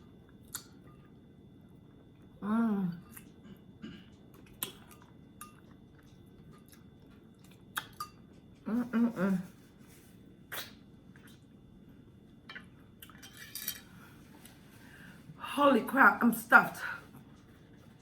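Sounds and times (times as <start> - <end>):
mouth eating noises: 10.5 - 11.4.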